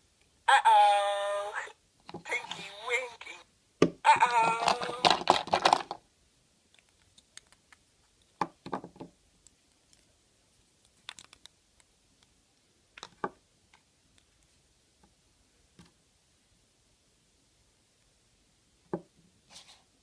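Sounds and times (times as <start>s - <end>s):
toys clicking and crackling: 4.2s - 6.0s, 11.0s - 12.3s.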